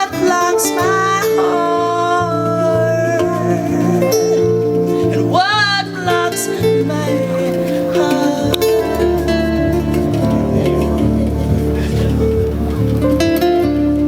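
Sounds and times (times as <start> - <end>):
guitars and bass sustained notes: 0.0 - 14.0
sliding melody line: 3.0 - 13.4.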